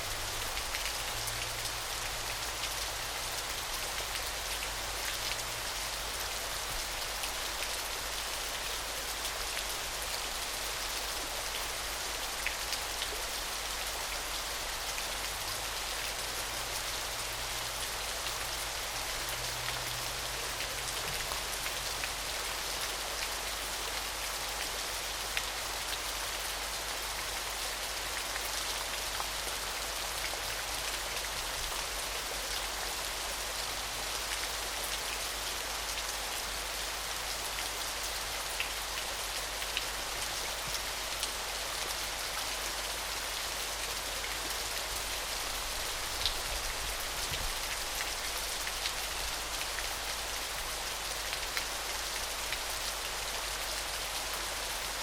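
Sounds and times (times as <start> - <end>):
small waterfall splashing: 0.0 - 55.0.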